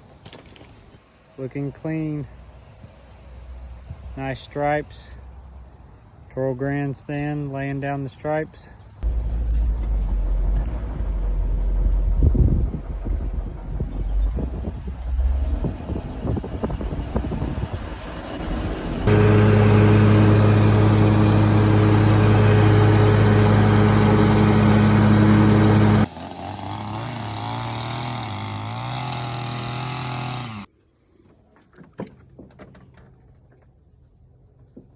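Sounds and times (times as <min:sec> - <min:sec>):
quieter engine wavering pitch: 0:09.0 - 0:26.1
mower engine running: 0:09.0 - 0:30.7.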